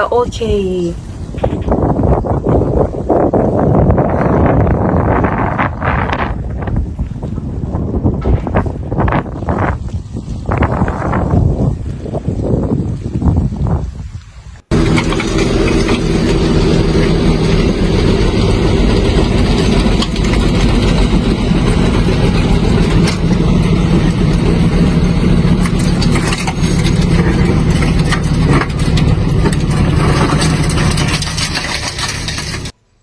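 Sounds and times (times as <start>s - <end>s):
constant rushing noise: 0.0s - 32.8s
vehicle engine running: 14.7s - 32.8s.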